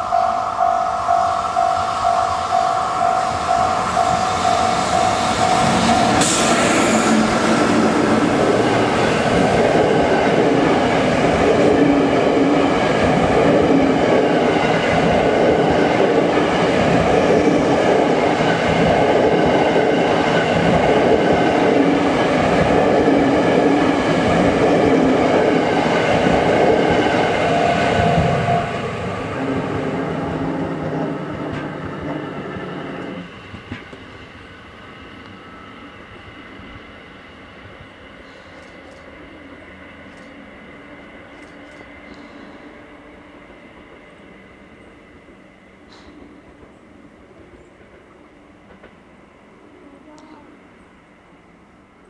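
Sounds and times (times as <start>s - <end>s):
crossing warning bell: 0.0s - 6.3s
train wheels rumbling on rail: 0.0s - 50.5s.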